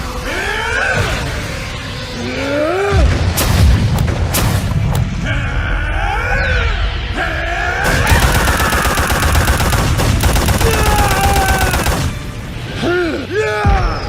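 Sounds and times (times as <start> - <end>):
people shouting and straining: 5.1 - 14.0.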